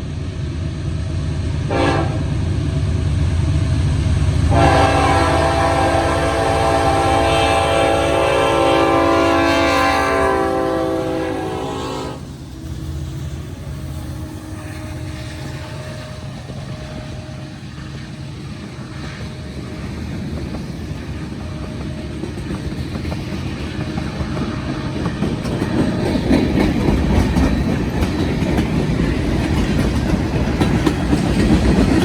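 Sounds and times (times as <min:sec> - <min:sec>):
train rumbling past: 0:00.0 - 0:32.0
locomotive air horn: 0:01.7 - 0:02.2, 0:04.5 - 0:12.3, 0:14.2 - 0:17.6.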